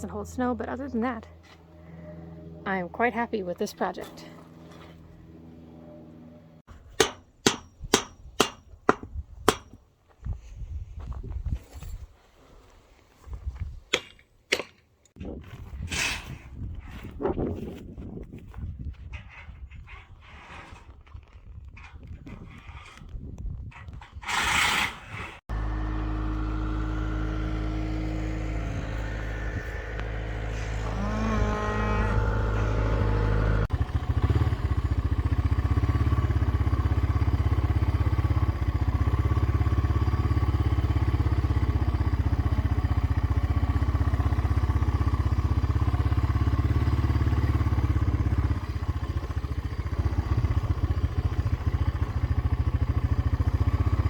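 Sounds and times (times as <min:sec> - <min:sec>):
steady low rumble: 0:25.5 - 0:35.2
cow mooing: 0:28.8 - 0:33.7.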